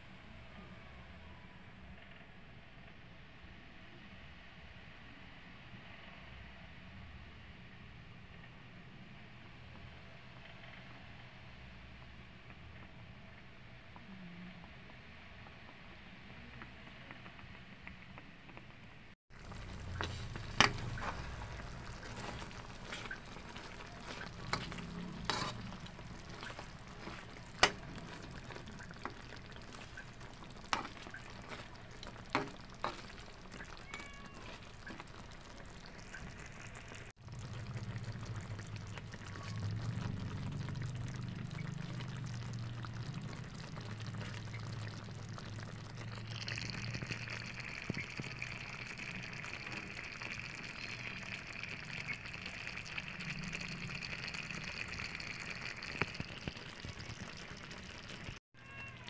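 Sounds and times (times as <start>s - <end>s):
curry sizzling in a pan: 19.3s - 59.0s.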